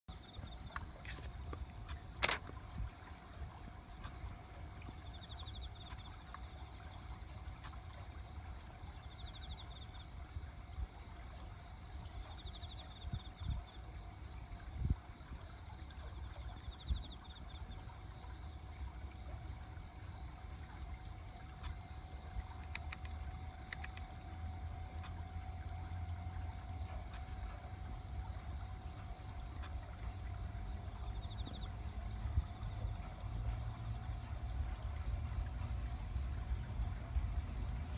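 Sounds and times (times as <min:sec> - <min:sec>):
insect chirps: 0:00.1 - 0:37.9
insects trilling: 0:00.1 - 0:37.9
sharp click: 0:01.9 - 0:02.6.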